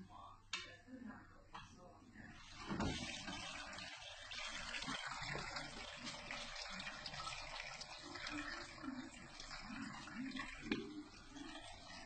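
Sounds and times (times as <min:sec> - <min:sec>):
water pouring into washing machine: 0:02.4 - 0:12.0.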